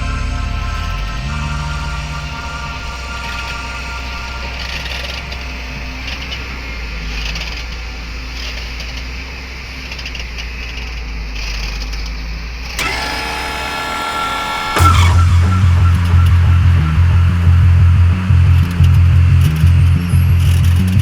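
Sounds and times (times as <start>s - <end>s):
music: 0.0s - 7.2s, 14.8s - 21.0s
diesel engine running: 0.0s - 10.9s, 12.6s - 21.0s.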